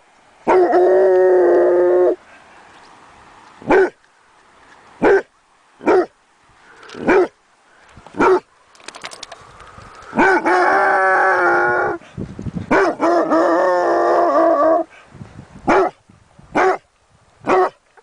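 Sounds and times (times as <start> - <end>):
dog barking: 3.7 - 4.0, 5.0 - 6.1, 7.0 - 7.3, 8.2 - 8.4, 12.7 - 13.2, 15.7 - 16.0, 16.6 - 16.8, 17.5 - 17.8.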